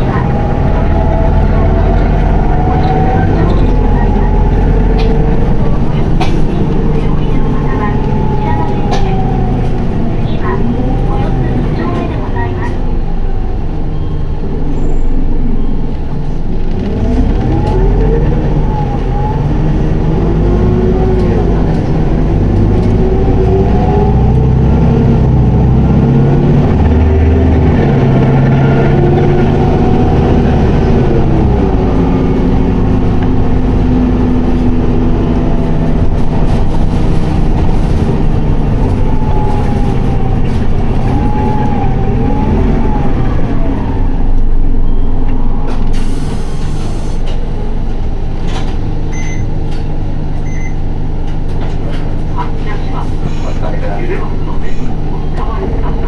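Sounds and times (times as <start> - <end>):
bus diesel engine: 0.0 - 56.0
air brakes hissing: 45.7 - 47.5.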